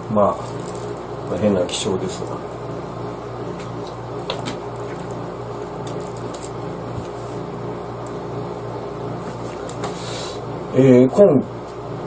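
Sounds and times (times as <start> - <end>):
machine hum: 0.0 - 12.0.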